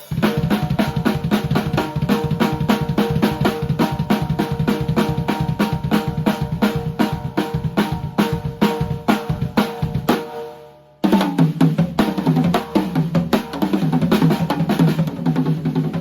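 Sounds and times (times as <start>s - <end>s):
drum kit beat: 0.0s - 16.0s.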